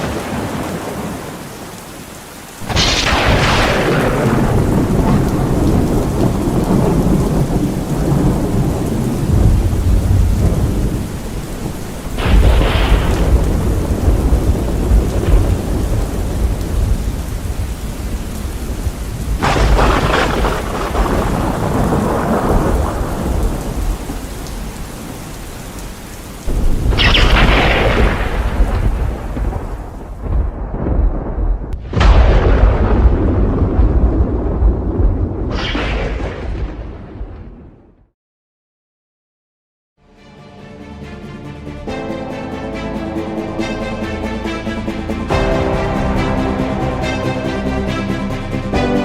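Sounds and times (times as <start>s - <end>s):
thunderclaps rumbling: 0.0s - 1.8s, 2.6s - 25.8s, 26.4s - 38.1s
steady rain: 0.0s - 37.2s, 42.0s - 49.0s.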